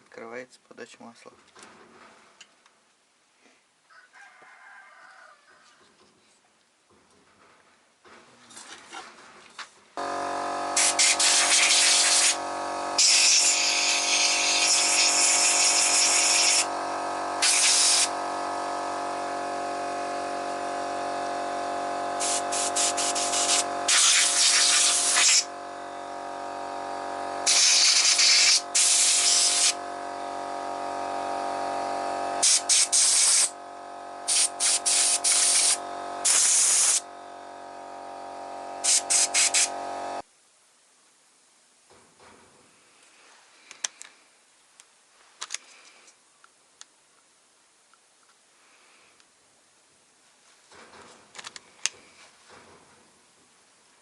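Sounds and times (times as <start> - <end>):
steady mechanical hum: 10.0 - 40.2
hissing spray bursts: 10.4 - 19.3, 22.1 - 25.6, 27.0 - 29.8, 32.4 - 33.6, 34.2 - 37.1, 38.8 - 40.2.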